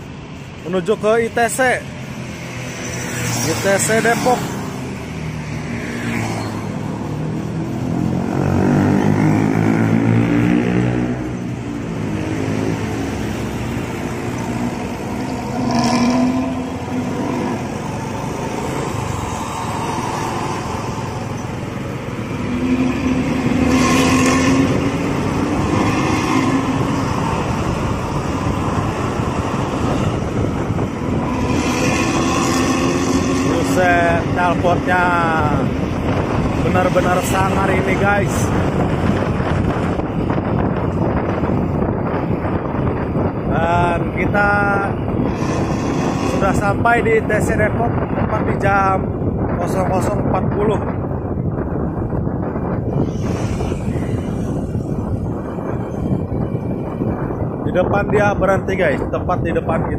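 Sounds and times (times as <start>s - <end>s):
bus diesel engine: 11.3s - 46.8s.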